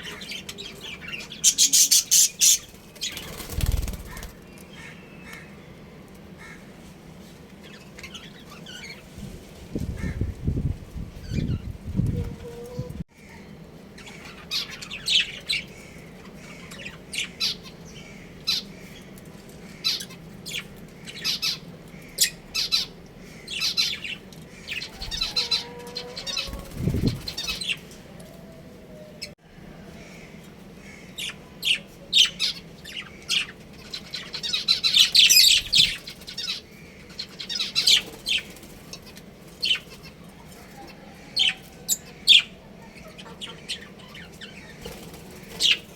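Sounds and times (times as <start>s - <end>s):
budgies chirping and squawking: 0.0s - 5.4s, 14.0s - 19.0s, 19.8s - 27.9s, 31.0s - 45.9s.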